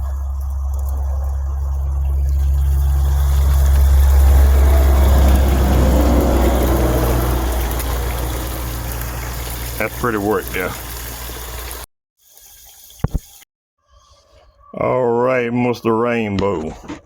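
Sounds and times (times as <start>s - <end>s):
steady low rumble: 0.0s - 11.8s
meat sizzling in hot grease: 2.7s - 13.4s.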